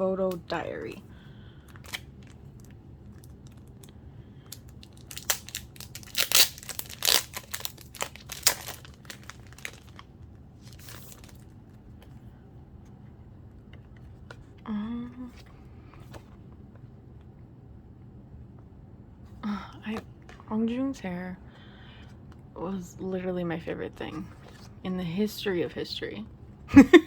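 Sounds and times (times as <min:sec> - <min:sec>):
packaging crinkling and rustling: 0:01.6 - 0:12.1.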